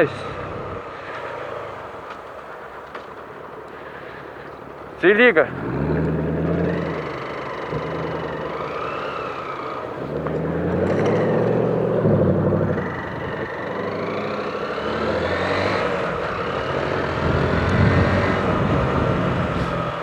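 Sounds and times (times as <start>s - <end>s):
car engine revving: 0.0s - 2.5s, 5.0s - 20.0s
small motorcycle engine running: 5.2s - 20.0s.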